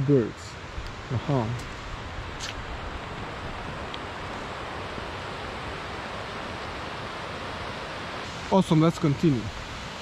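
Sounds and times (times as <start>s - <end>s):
even rushing hiss: 4.2s - 10.0s.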